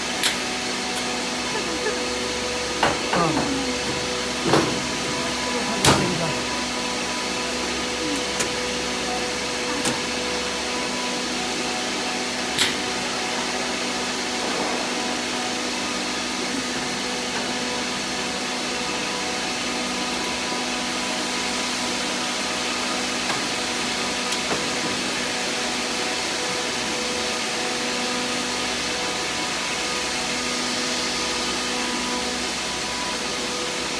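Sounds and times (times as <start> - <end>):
air compressor hiss and hum: 0.0 - 33.9.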